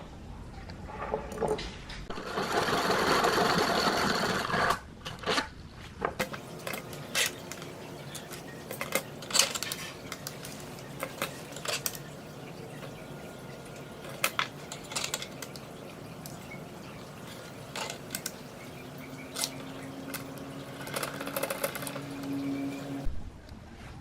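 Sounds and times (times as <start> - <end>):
small power tool running: 2.1 - 4.7
small metal parts clicking: 14.0 - 15.6, 19.3 - 22.3.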